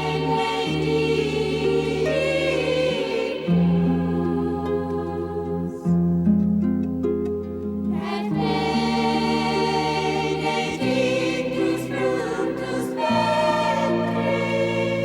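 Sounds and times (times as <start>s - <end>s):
women's choir singing a hymn: 0.0s - 6.0s, 7.9s - 15.0s.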